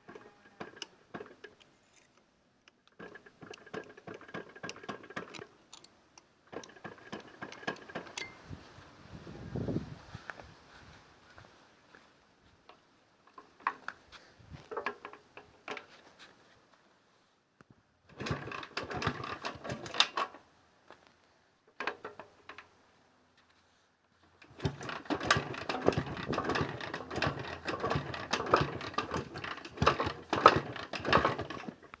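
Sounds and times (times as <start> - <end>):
engine running with piston knock: 24.5 - 31.8.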